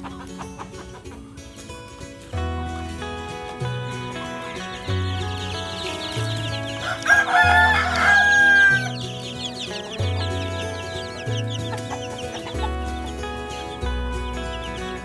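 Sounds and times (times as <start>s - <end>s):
background music with bass line: 0.0s - 15.0s
rooster crowing: 5.6s - 11.2s.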